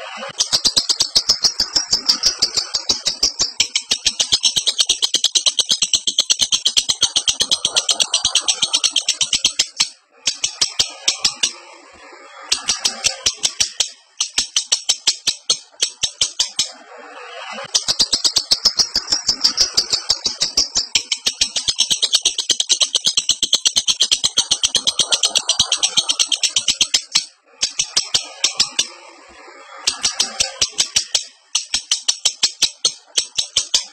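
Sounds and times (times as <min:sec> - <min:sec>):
lovebird chattering song: 0:00.0 - 0:11.7, 0:12.4 - 0:29.0, 0:29.8 - 0:33.9.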